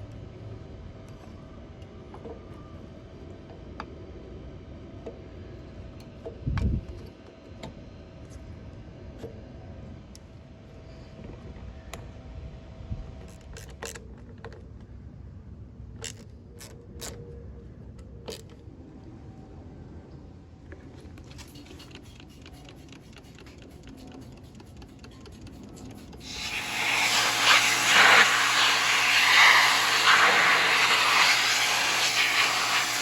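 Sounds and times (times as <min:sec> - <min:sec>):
tools clicking and tapping: 0:21.2 - 0:26.3.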